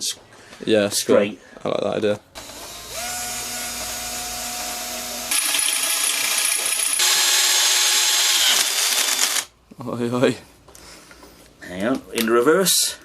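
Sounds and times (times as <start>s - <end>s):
cordless drill boring into steel: 2.4s - 9.5s.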